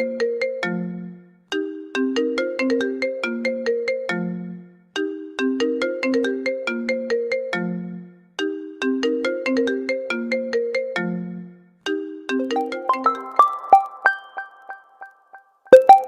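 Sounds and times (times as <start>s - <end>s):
phone ringtone melody: 12.4s - 16.0s.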